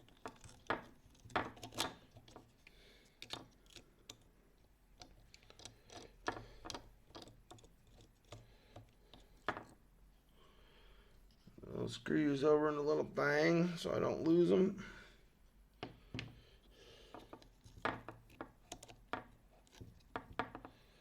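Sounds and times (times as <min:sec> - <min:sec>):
small screws clicking: 0:05.0 - 0:09.5.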